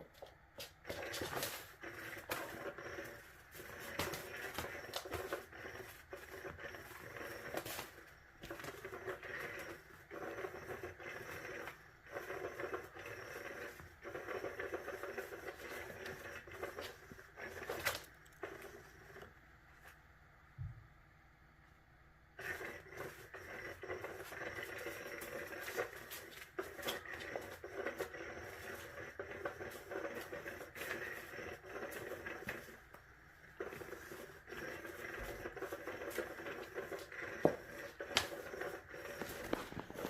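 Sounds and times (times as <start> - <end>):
kitten toys rustling and clattering: 0.1 - 10.1, 33.6 - 40.0.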